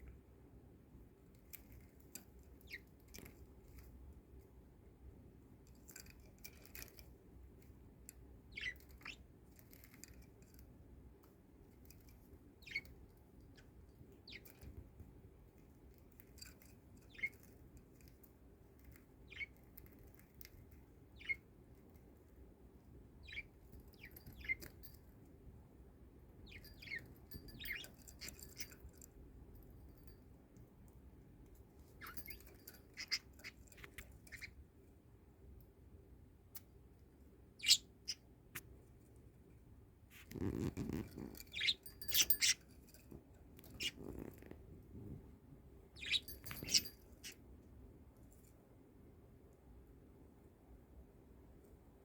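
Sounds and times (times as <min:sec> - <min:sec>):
budgerigar chirping faintly: 0:02.6 - 0:02.9, 0:08.5 - 0:09.9, 0:12.6 - 0:14.7, 0:17.0 - 0:17.5, 0:19.2 - 0:20.4, 0:21.1 - 0:21.5, 0:23.2 - 0:24.8, 0:26.4 - 0:28.8, 0:32.0 - 0:34.6, 0:37.6 - 0:38.3, 0:40.4 - 0:42.7, 0:43.7 - 0:44.4, 0:46.0 - 0:47.4.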